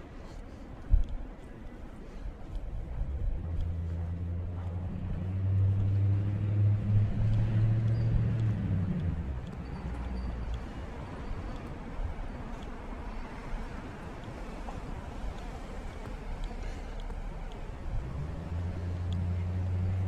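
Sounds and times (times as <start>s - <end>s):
vehicle engine passing: 3.4s - 12.4s, 15.0s - 20.0s.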